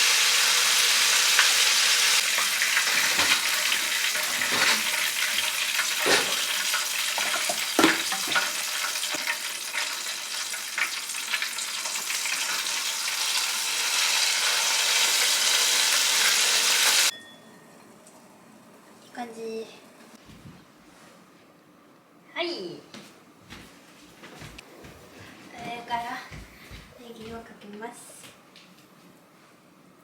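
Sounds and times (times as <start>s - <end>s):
food sizzling in a frying pan: 0.0s - 17.1s.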